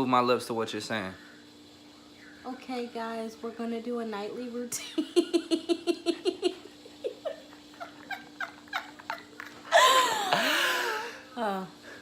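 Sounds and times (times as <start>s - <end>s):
person laughing: 4.8s - 11.2s.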